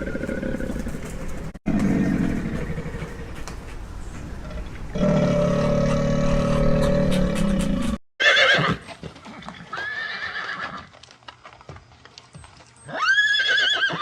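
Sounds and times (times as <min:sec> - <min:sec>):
horse whinnying: 0:05.5 - 0:08.9, 0:09.6 - 0:10.9, 0:12.9 - 0:14.0.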